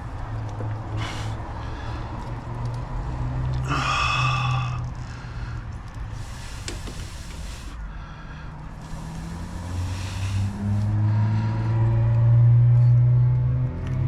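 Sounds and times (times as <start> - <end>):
low engine drone: 0.0 - 14.0
breathy hiss: 1.0 - 2.0, 3.7 - 11.2.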